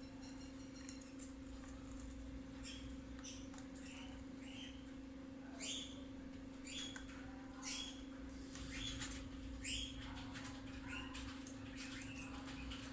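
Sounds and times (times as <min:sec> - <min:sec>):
steady low hum: 0:00.0 - 0:12.9
cockatiel chirping: 0:02.6 - 0:04.8.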